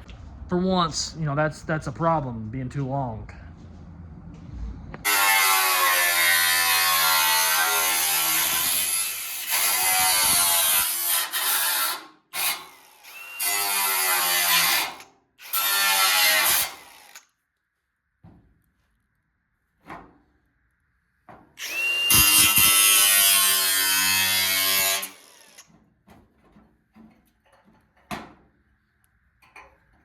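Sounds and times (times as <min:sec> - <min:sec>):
power tool cutting sheet metal: 0:05.0 - 0:17.3, 0:21.6 - 0:25.8.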